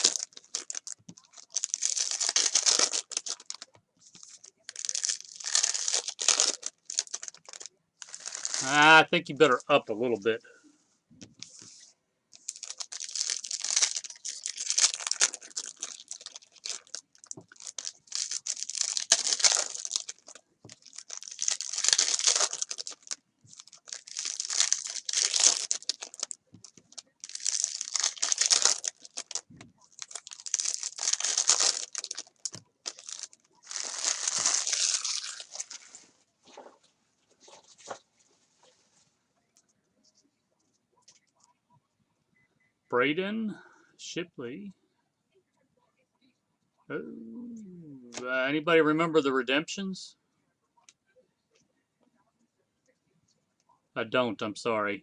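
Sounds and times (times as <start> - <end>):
wrappers torn and crinkled: 0.0 - 8.8, 12.4 - 36.7.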